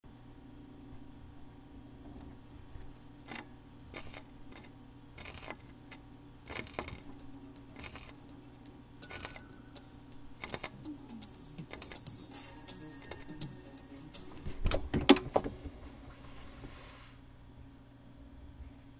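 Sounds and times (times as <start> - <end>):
low hum: 0.1 - 18.9
vinyl clicks and pops: 6.5 - 13.5.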